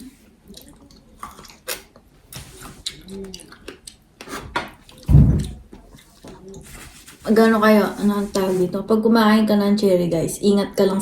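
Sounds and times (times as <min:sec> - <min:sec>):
chewing and wet mouth sounds: 0:00.4 - 0:06.8.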